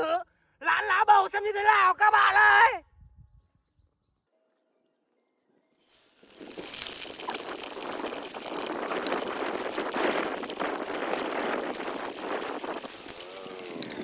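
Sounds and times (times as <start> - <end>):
leaves sizzling in hot oil: 5.8 - 14.0.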